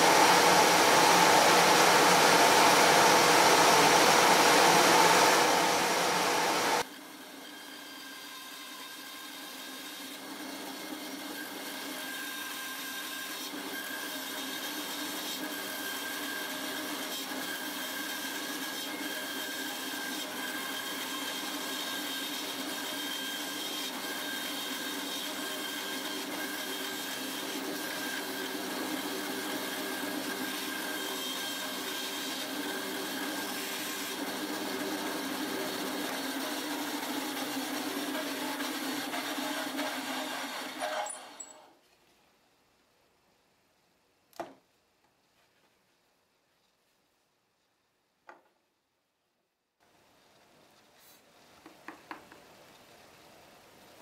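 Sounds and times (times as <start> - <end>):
woodworking power tool whining: 0.0 - 9.1, 11.1 - 41.6.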